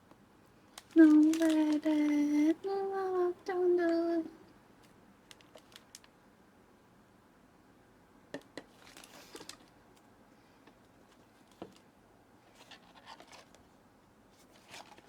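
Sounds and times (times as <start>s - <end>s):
packaging rustle: 0.7s - 2.4s, 4.8s - 6.1s, 8.7s - 9.8s, 12.5s - 13.6s, 14.4s - 15.0s.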